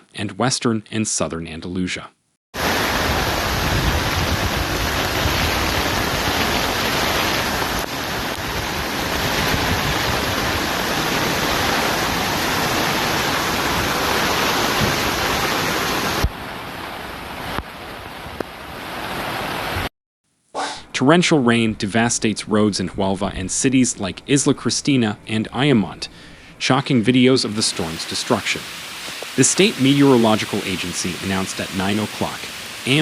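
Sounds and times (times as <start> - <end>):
rushing floodwater: 2.6 - 19.8, 26.6 - 33.0.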